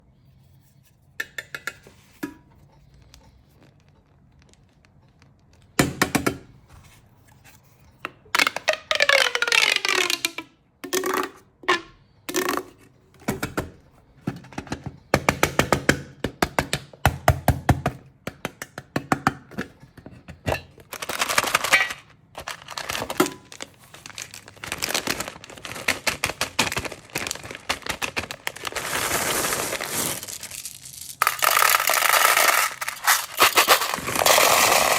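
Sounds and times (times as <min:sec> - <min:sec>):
candy tins clicking and knocking: 0:12.3 - 0:34.9
plastic wrappers crinkling: 0:20.8 - 0:34.9.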